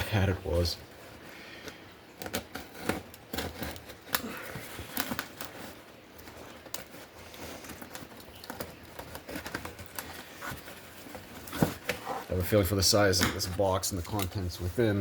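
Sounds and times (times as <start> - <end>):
tape and cardboard rustling: 0.0 - 15.0
cardboard box handled and cut: 2.2 - 12.3.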